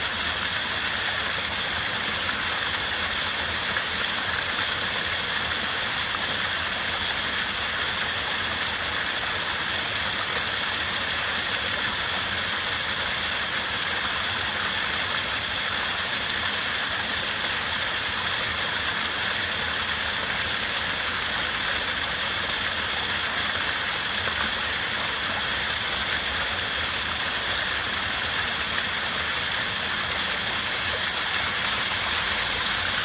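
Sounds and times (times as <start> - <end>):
waterfall roaring: 26.4 - 33.0.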